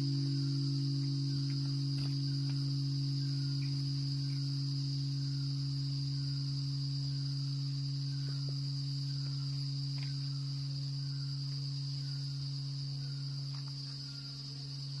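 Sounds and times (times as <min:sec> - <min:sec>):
large metal bell ringing: 0:00.0 - 0:06.7
steady high-pitched tone: 0:00.0 - 0:15.0.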